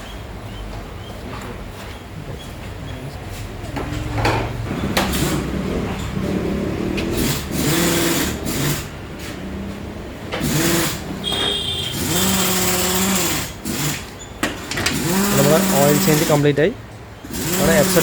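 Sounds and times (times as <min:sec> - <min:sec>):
motorcycle engine revving: 0:02.6 - 0:14.1, 0:14.8 - 0:16.6, 0:17.2 - 0:18.0.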